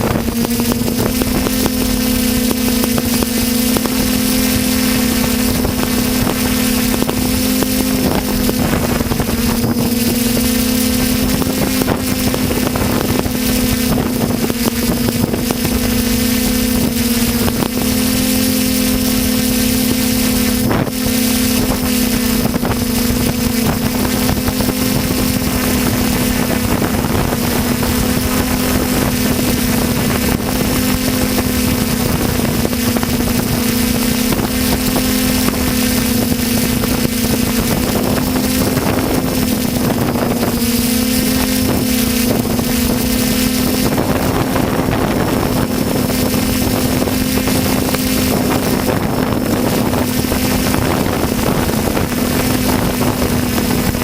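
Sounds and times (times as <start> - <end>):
drone motors humming: 0.0 - 54.0
wind rushing over microphone: 0.0 - 54.0.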